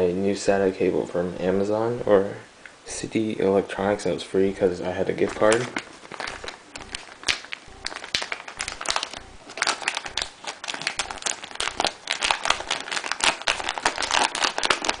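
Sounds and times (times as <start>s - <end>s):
plastic packaging crinkling: 4.9s - 15.0s.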